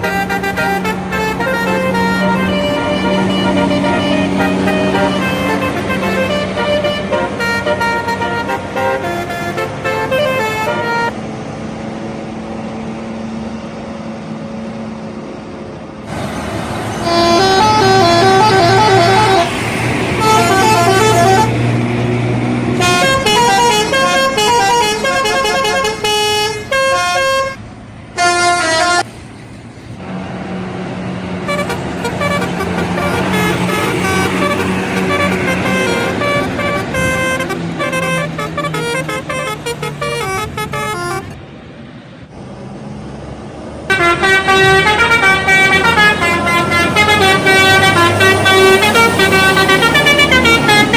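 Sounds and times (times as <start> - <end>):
multi-tone air horns playing tunes: 0.0 - 11.2, 16.9 - 21.7, 22.7 - 27.6, 28.2 - 29.1, 31.4 - 41.4, 43.9 - 50.9
bus engine: 0.0 - 50.9
road noise: 0.0 - 50.9.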